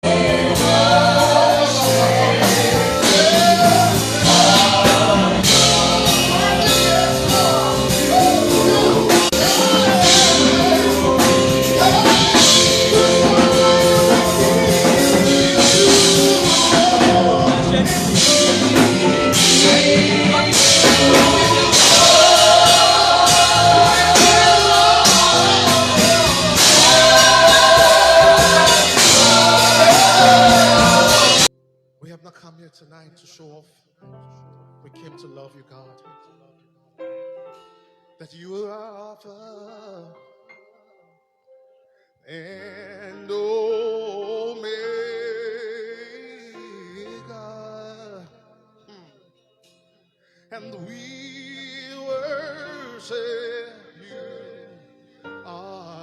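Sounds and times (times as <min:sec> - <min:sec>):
band playing: 0:00.0 - 0:31.5
drums beating: 0:00.0 - 0:31.5
voices singing gospel: 0:00.0 - 0:31.5, 0:50.5 - 0:56.0.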